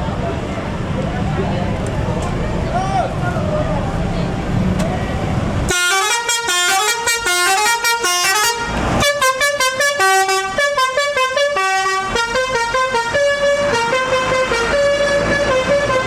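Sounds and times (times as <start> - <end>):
bus melodic horn: 5.7 - 16.0.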